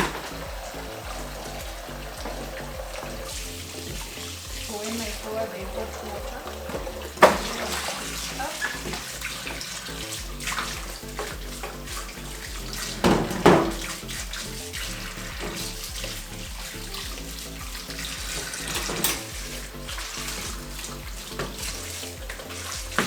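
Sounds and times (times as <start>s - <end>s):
hot water pouring: 0.0s - 23.0s
knocks: 13.0s - 14.0s.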